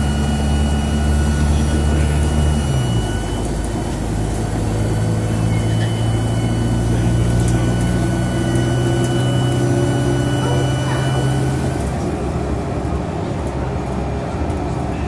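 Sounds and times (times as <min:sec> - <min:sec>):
turbocharger whistle: 0:00.0 - 0:03.7, 0:04.3 - 0:11.8
bus engine running: 0:00.0 - 0:15.0.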